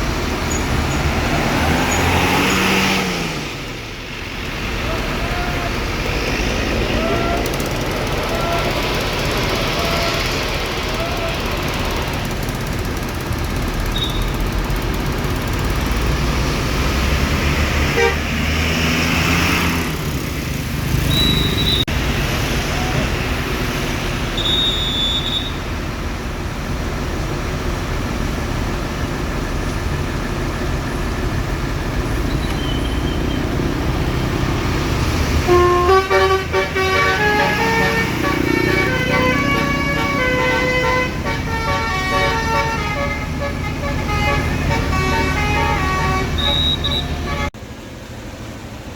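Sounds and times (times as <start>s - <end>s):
road traffic: 0.0s - 48.9s
musical air horn melody: 35.5s - 47.6s.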